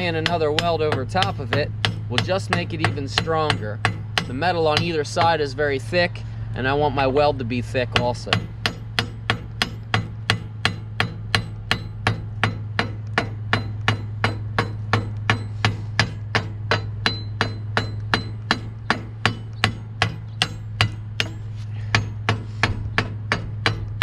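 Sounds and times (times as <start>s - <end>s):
hammer striking steel: 0.0s - 5.6s, 7.9s - 24.0s
steady low hum: 0.0s - 24.0s.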